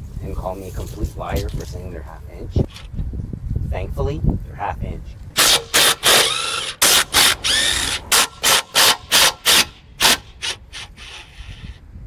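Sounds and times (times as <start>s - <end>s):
cordless power wrench spinning bolts: 5.4s - 11.8s.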